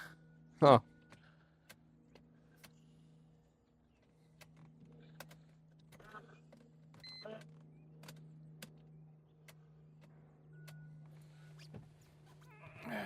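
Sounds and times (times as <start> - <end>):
faint hum: 0.0 - 13.0
small clicks and taps: 4.0 - 11.1.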